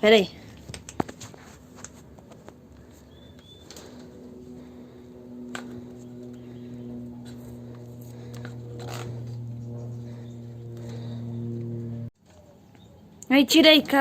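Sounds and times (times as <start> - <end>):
low steady hum: 0.0 - 12.1
tape being pulled off wire: 7.2 - 9.5.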